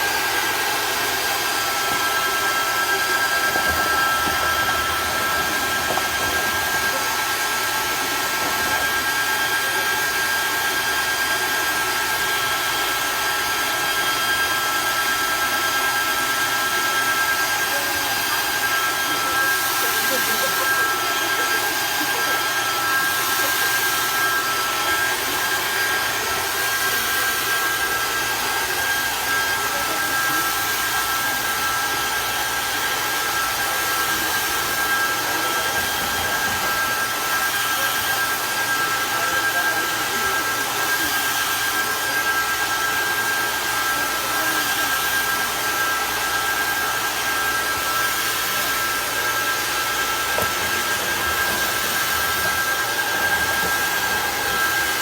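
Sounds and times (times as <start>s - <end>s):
electric sprayer hiss and whine: 0.0s - 55.0s.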